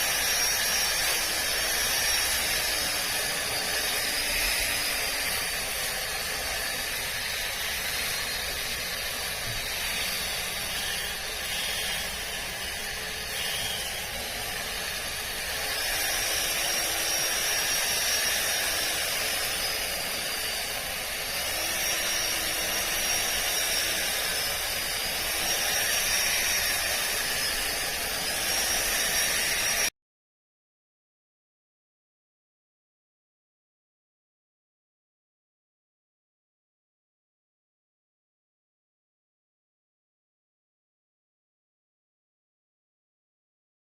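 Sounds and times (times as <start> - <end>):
grass trimmer cutting grass: 0.0 - 29.9.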